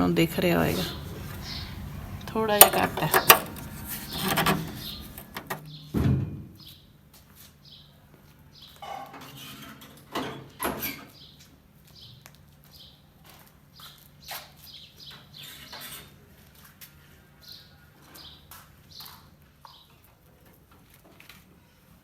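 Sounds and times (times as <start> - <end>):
faint steady hum: 0.0 - 5.7
birds chirping: 0.0 - 6.0
handling knocks: 0.6 - 5.7.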